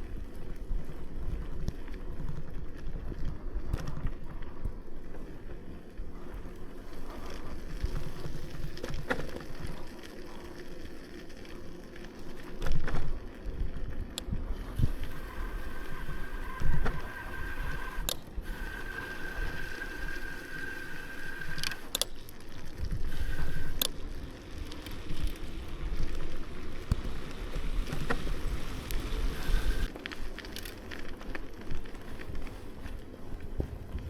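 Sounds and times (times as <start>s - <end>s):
wind rumble on microphone: 12.6s - 34.0s
high squeal: 14.9s - 21.9s.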